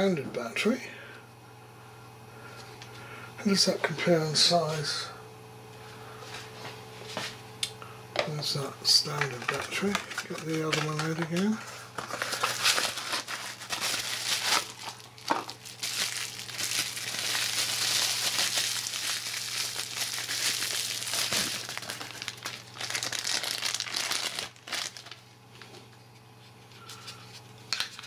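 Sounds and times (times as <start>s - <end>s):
plastic packaging crinkling: 8.9s - 25.8s.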